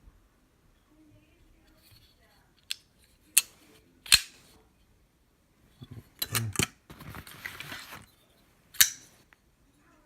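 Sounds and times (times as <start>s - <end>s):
pocket knife snapping open and shut: 4.1s - 4.3s
handling rustle: 5.7s - 9.4s.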